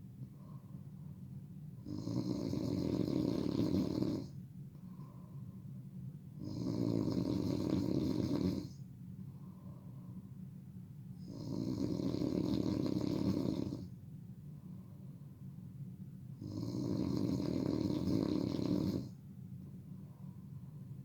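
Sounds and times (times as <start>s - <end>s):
quiet breathing: 0.0s - 21.0s
person snoring loudly: 1.8s - 4.3s, 6.4s - 8.7s, 11.2s - 13.9s, 16.4s - 19.1s.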